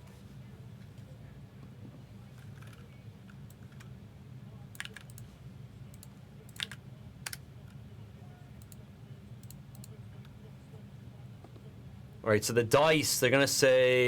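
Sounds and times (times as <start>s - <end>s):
low steady hum: 0.0s - 14.0s
keyboard and mouse clicks: 4.8s - 5.2s, 5.9s - 7.4s.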